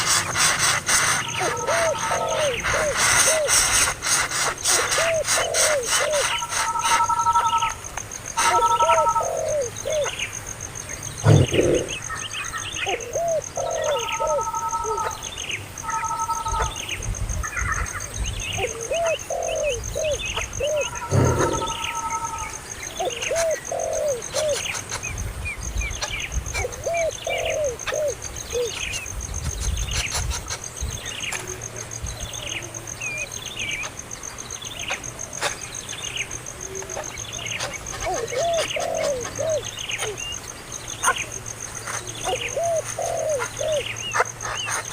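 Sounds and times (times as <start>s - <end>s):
lower arched bird calls: 0.0s - 31.5s, 35.6s - 44.9s.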